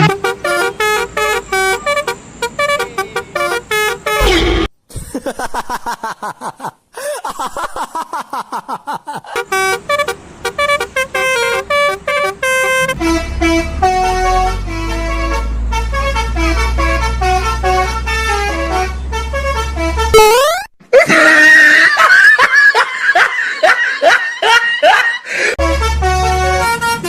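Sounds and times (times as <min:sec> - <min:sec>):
musical bus horn: 0:00.0 - 0:04.7, 0:09.3 - 0:20.4, 0:25.4 - 0:27.0.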